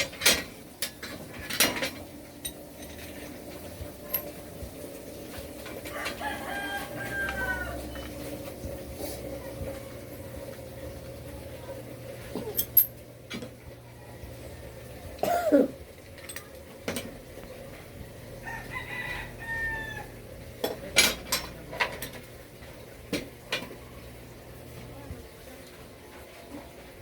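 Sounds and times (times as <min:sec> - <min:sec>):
rooster crowing: 0:05.8 - 0:08.2, 0:18.4 - 0:20.3.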